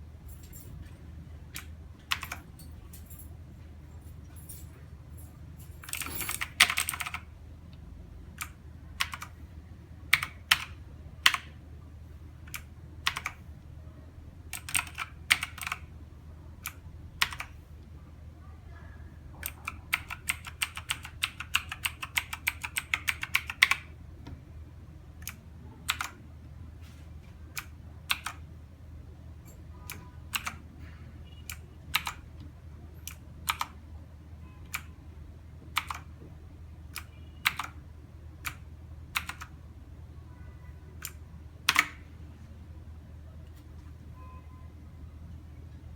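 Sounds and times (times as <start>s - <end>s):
mechanical keyboard typing: 1.5s - 2.5s, 5.8s - 7.3s, 8.4s - 9.4s, 10.1s - 11.6s, 12.4s - 13.5s, 14.5s - 15.9s, 16.6s - 17.6s, 19.4s - 23.9s, 25.2s - 26.2s, 27.5s - 28.4s, 29.9s - 30.7s, 31.4s - 32.4s, 33.0s - 33.8s, 34.6s - 34.9s, 35.7s - 36.2s, 36.9s - 37.8s, 38.4s - 39.6s, 41.0s - 42.1s.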